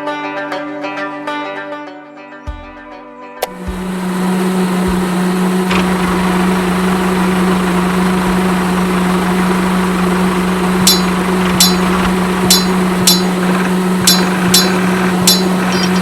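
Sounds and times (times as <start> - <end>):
small motor humming: 3.4 - 16.0.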